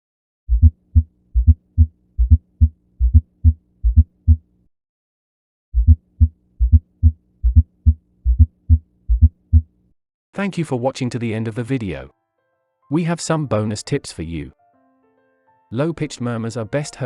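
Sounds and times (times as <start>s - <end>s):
heartbeat sounds: 0.5s - 4.5s, 5.8s - 9.7s.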